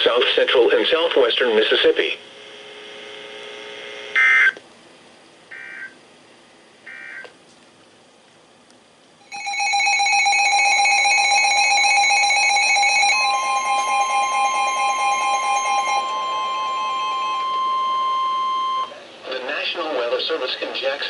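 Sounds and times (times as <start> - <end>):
warbling attention tone: 12.1 - 19.0.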